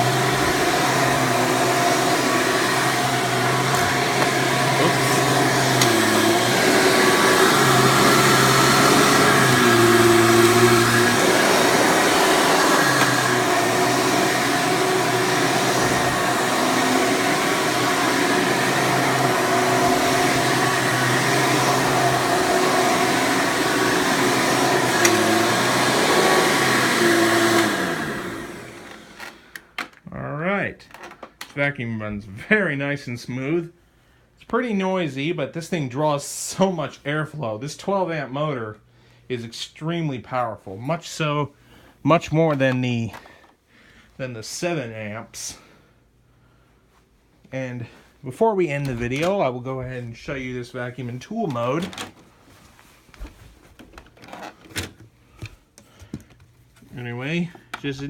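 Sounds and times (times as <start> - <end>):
upright vacuum motor running: 0.0 - 29.9.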